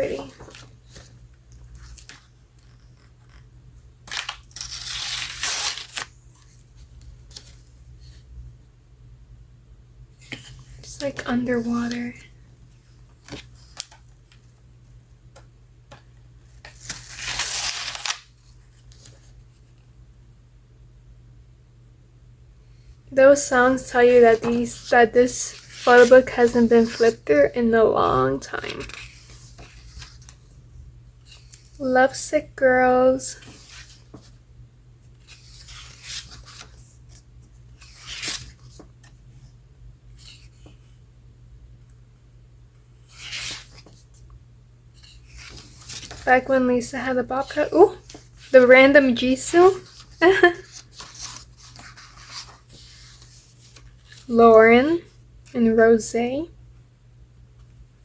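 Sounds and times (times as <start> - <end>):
stiff pages crackling: 0.0 - 3.4, 4.0 - 7.6, 13.1 - 14.5, 16.6 - 19.4, 24.0 - 27.3, 28.4 - 30.4, 35.2 - 39.2, 43.1 - 44.2, 45.0 - 46.5, 47.4 - 54.3
rustling page turn: 0.0 - 3.5, 4.1 - 8.3, 10.2 - 12.3, 13.0 - 14.5, 15.4 - 19.8, 24.0 - 27.3, 28.5 - 30.6, 31.2 - 31.8, 33.3 - 34.4, 35.1 - 39.2, 40.1 - 40.9, 43.0 - 44.3, 45.0 - 46.5, 47.4 - 54.3.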